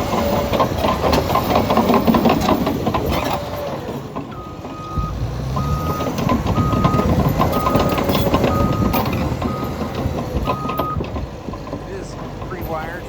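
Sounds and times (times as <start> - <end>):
diesel engine: 0.0 - 13.0
backup alarm beeping: 4.3 - 9.9, 10.5 - 11.0.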